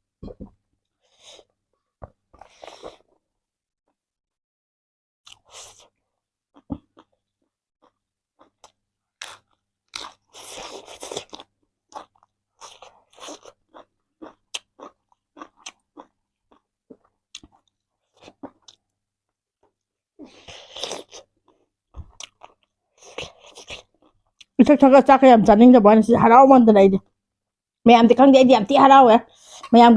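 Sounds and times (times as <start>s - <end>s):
crunching bites and chewing: 7.8s - 18.9s, 20.4s - 24.5s.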